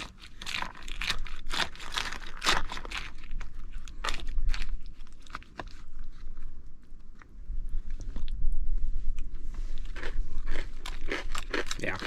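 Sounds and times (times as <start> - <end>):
person chewing crunchy food: 0.0 - 6.4, 9.1 - 12.0
steady low rumble: 0.8 - 12.0.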